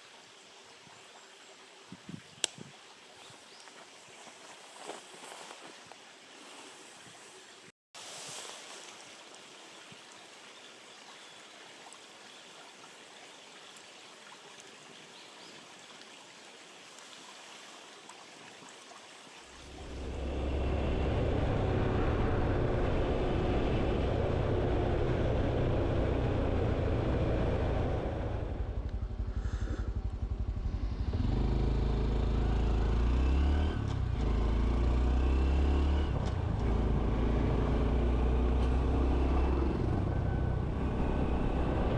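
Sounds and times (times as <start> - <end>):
faint outdoor hiss: 0.0 - 20.6
motorcycle engine running: 19.7 - 41.9.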